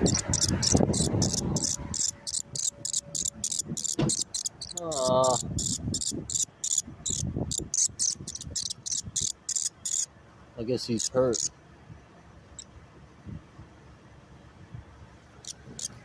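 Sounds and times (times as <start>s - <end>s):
insects chirping: 0.0s - 10.1s, 10.8s - 11.5s, 15.4s - 16.0s.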